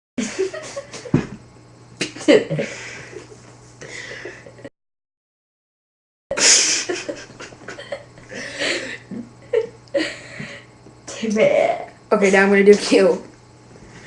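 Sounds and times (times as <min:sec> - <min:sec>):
man laughing: 0:00.2 - 0:01.4, 0:06.3 - 0:10.4
man breathing in bursts: 0:02.6 - 0:04.6, 0:08.3 - 0:09.1.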